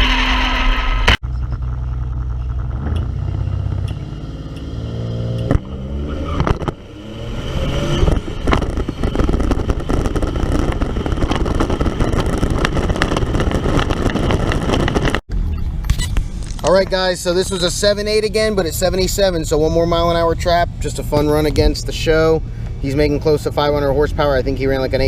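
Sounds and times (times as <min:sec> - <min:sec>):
tyre and wind noise: 0:00.0 - 0:17.2
car engine running: 0:00.0 - 0:25.0.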